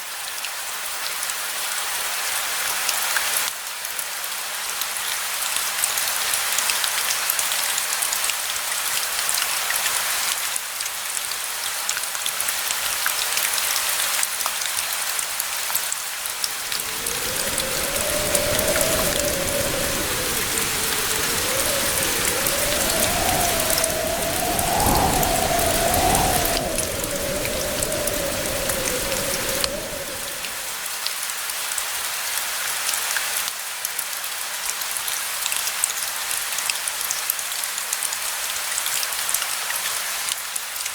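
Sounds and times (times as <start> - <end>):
steady rain: 0.0 - 35.6
distant thunder rumbling: 16.6 - 30.8.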